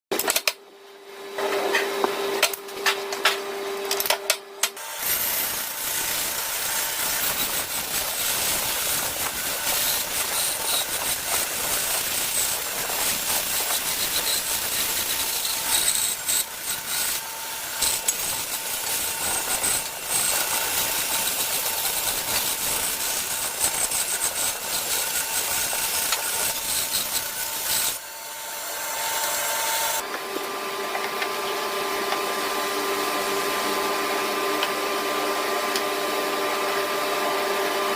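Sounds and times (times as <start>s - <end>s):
tool scraping wood: 5.0s - 30.0s.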